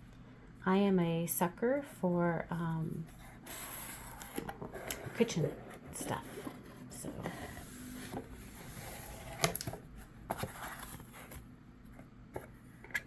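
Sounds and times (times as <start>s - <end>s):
packaging rustling: 6.4s - 11.5s.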